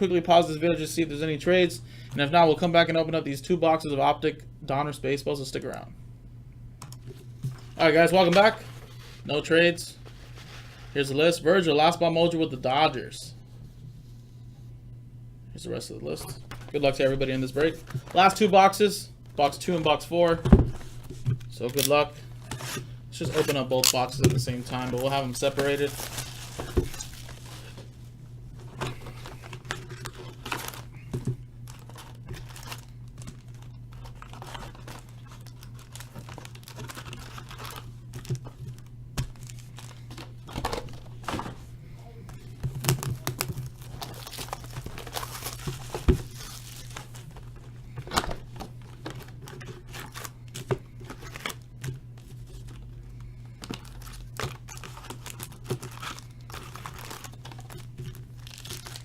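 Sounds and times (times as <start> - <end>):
low steady hum: 0.0 - 59.0
plastic shrink wrap crinkling: 20.8 - 41.4, 42.3 - 59.0.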